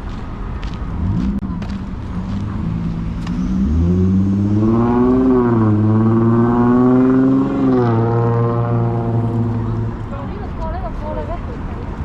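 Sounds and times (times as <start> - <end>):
large vehicle engine pulling away: 1.0 - 10.3.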